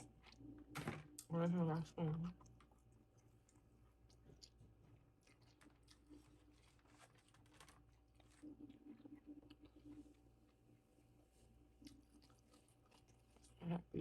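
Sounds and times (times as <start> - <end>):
chewing and mouth sounds: 0.0 - 10.6, 11.4 - 14.0
small clicks and crunches: 5.2 - 8.4.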